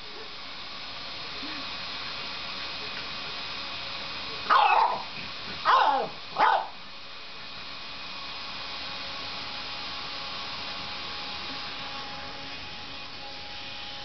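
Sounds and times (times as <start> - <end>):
steady background hum: 0.0 - 14.0
dog barking: 4.5 - 6.8.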